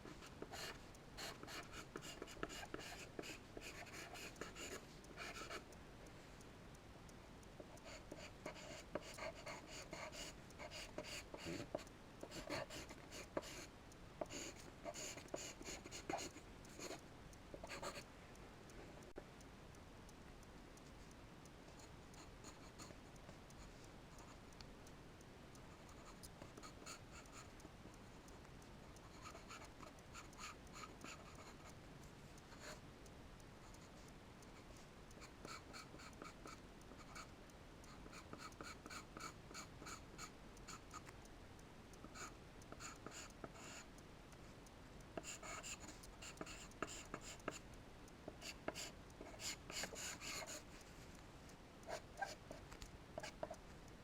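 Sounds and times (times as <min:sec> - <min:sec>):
charcoal scratching on paper: 0:00.5 - 0:05.5, 0:48.4 - 0:50.6.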